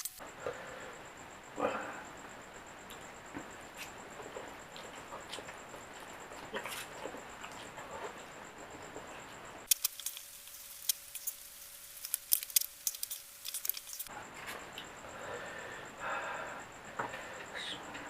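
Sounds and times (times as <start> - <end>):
sharp clicks: 9.6 - 11.4.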